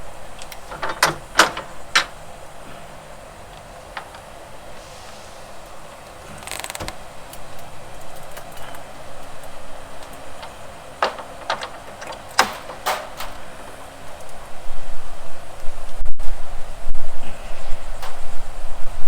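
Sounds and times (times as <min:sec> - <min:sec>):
sharp metal latch clicks: 0:00.4 - 0:02.2, 0:03.9 - 0:04.4, 0:09.9 - 0:13.6
hood latch rattle: 0:00.4 - 0:02.3, 0:03.8 - 0:04.4, 0:09.9 - 0:13.6.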